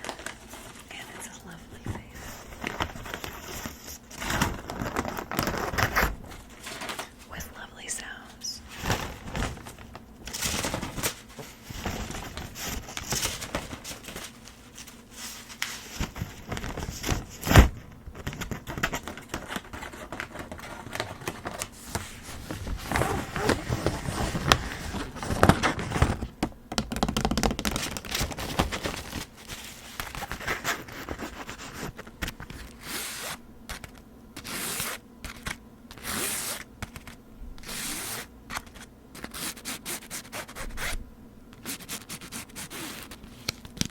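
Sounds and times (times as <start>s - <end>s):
folding fan scraping and rustling: 2.3s - 7.3s, 8.7s - 17.8s.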